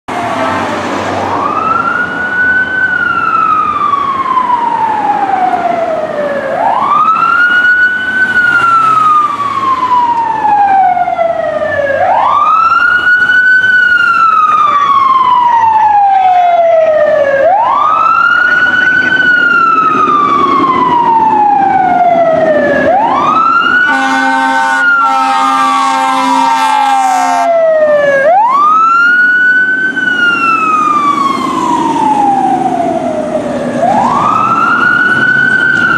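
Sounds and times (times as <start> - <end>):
fire engine siren wailing: 0.1 - 35.9
air horn blare: 23.8 - 27.6.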